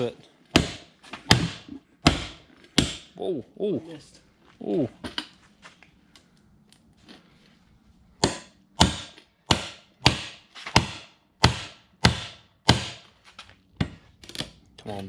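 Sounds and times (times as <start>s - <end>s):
hammer strikes on wheel rim: 0.5s - 3.2s, 8.2s - 13.1s.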